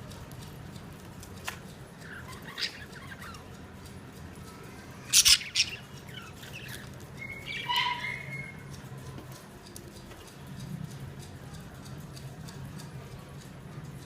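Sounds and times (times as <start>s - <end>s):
faint clicks and taps: 0.0s - 4.7s, 8.6s - 14.0s
budgerigars chirping: 2.0s - 3.5s, 5.1s - 8.6s.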